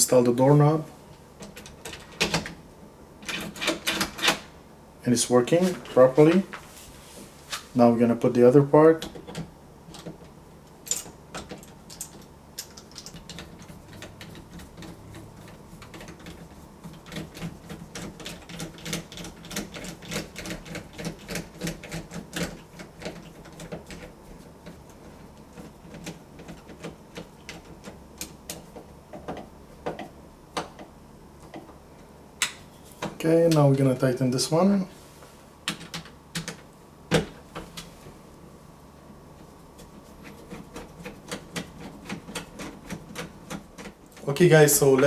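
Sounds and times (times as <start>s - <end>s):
faint steady hum: 0.0s - 45.0s
doorknob hardware clicking and rattling: 1.4s - 2.6s, 3.2s - 4.5s, 9.0s - 30.9s, 35.7s - 37.4s.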